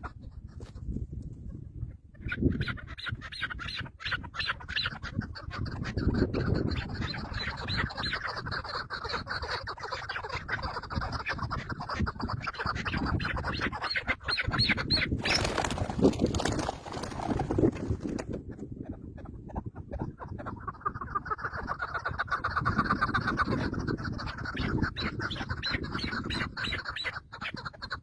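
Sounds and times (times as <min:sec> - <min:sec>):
birds squawking: 0:02.2 - 0:16.0, 0:20.8 - 0:28.0.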